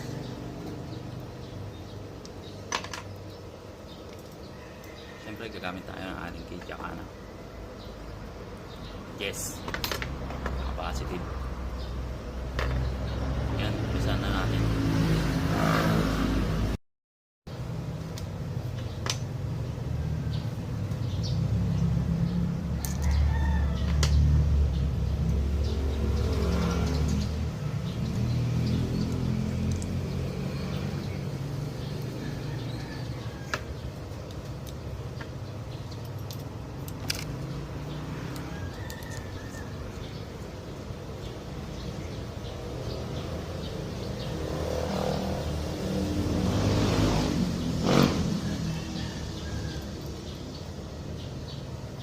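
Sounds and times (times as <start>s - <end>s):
rooster crowing: 4.4s - 5.8s, 22.7s - 24.4s, 31.9s - 34.0s, 38.0s - 40.2s, 48.0s - 50.4s.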